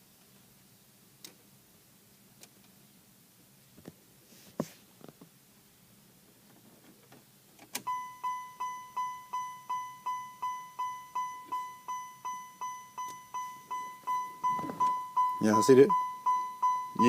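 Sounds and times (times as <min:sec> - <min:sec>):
car warning chime dinging: 0:07.8 - 0:17.0.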